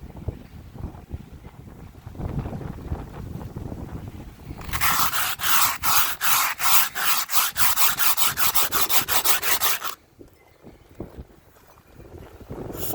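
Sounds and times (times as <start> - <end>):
rhythmic scraping strokes: 4.6 - 10.0.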